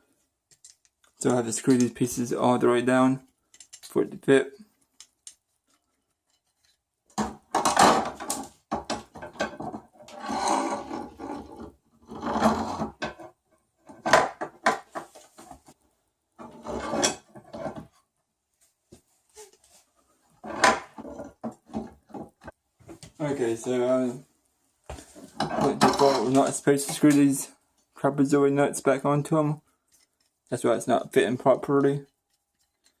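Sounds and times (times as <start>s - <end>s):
plastic and metal parts clicking: 0.5s - 2.0s, 3.4s - 4.0s.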